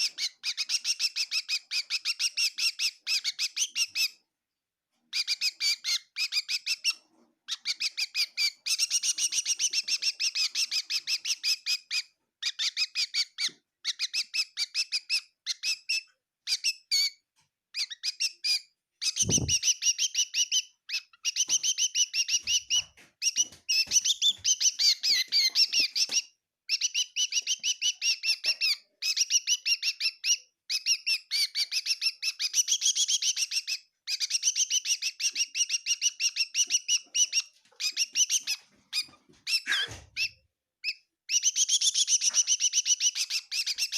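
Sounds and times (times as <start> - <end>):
bird chirping quickly: 19.0 - 43.9
low thump: 19.3 - 19.6.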